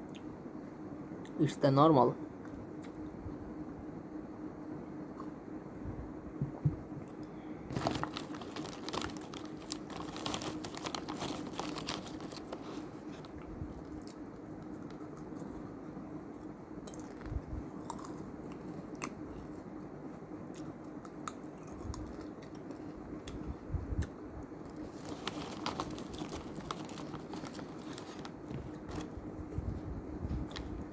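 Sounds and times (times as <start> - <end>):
low hum: 2.2 - 30.9
crunching and chewing snacks: 7.1 - 29.2, 30.4 - 30.9
packet rustling: 7.7 - 15.6, 24.6 - 29.5.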